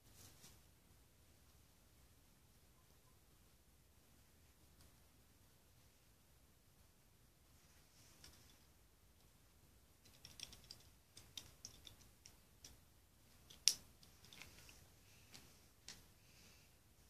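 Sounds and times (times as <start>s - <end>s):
plastic building bricks clicking: 10.0s - 12.8s, 13.4s - 16.0s.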